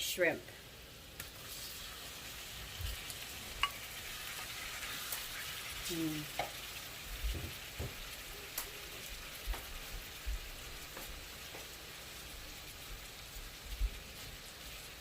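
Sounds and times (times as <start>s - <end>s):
shrimp sizzling in a wok: 0.1s - 15.0s.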